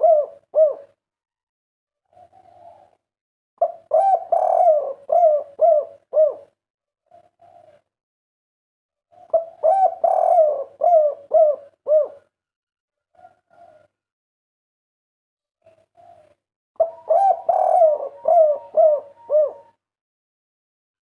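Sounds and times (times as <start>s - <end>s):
dove cooing: 0.0s - 1.0s, 2.0s - 3.0s, 3.6s - 7.9s, 9.1s - 12.3s, 15.7s - 19.8s.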